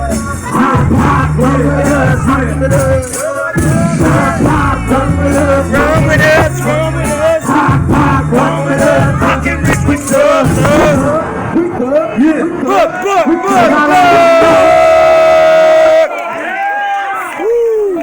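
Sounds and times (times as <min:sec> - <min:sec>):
person singing: 0:00.0 - 0:11.3
hip-hop backing track: 0:00.0 - 0:16.1.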